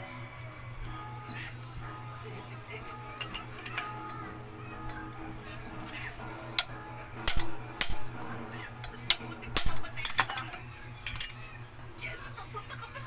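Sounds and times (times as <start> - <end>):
steady low hum: 0.0 - 13.0
metal clinks and knocks: 3.1 - 5.1, 9.1 - 11.6.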